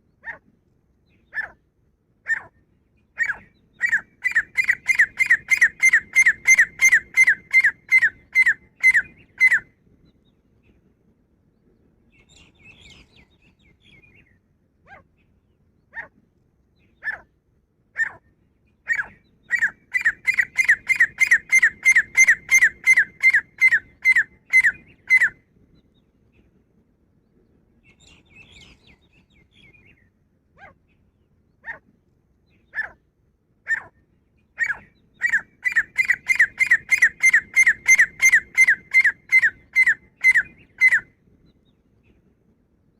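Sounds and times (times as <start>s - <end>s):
bird calling sharp repeated notes: 3.2s - 9.6s, 18.9s - 25.4s, 34.6s - 41.1s.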